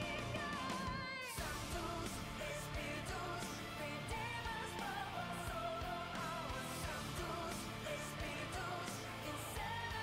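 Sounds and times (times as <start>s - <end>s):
pop song with singing and drums: 0.0s - 10.0s.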